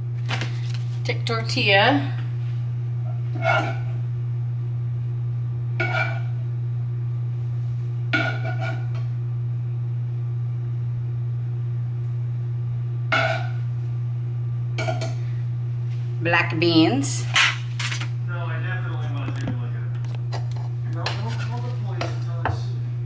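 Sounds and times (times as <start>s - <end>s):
steady low hum: 0.0s - 23.0s
food and dishes clattering: 8.2s - 8.9s, 20.3s - 22.6s.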